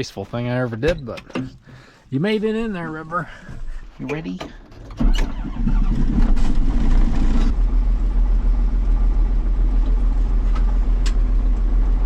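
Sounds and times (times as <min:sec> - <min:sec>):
tractor diesel engine starting: 0:04.7 - 0:12.0
diesel engine idling: 0:05.3 - 0:12.0.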